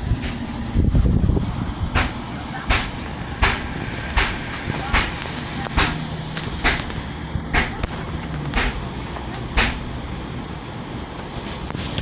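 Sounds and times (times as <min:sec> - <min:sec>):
sharp blows knocking off tiles: 0:02.0 - 0:10.0.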